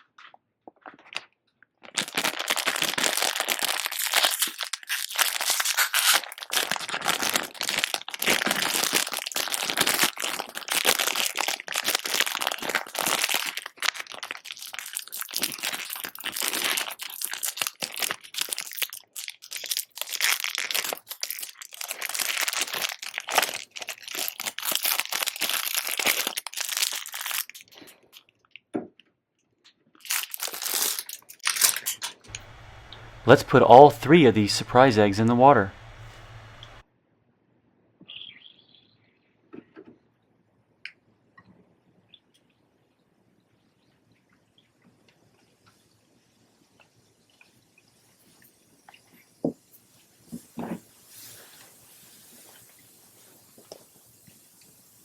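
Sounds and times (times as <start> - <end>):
wrappers crinkling and crunching: 1.8 - 28.3, 30.0 - 33.8.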